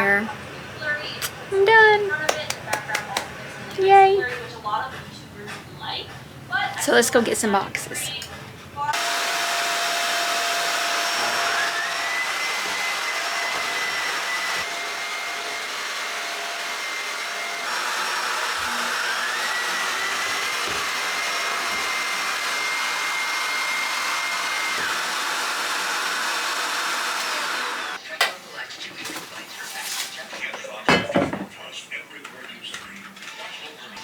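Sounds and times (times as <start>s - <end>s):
vacuum cleaner running: 8.9s - 28.0s.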